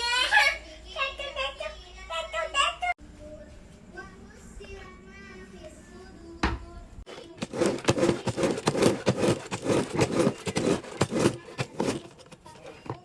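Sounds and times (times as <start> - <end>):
plastic mop and bucket scraping: 7.1 - 13.0.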